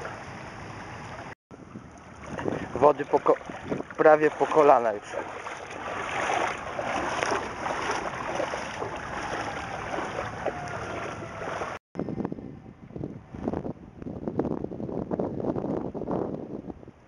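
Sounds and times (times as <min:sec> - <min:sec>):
water sloshing and splashing: 0:00.0 - 0:11.8.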